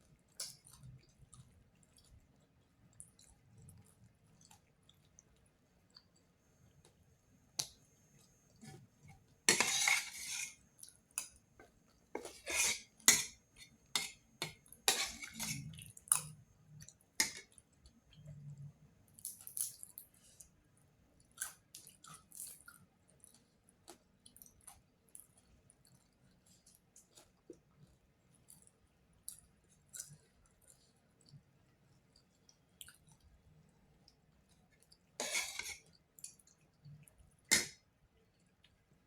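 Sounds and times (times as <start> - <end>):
cat eating from food bowl: 7.8 - 18.8
dish clinking and scraping: 9.5 - 10.6, 14.9 - 15.7.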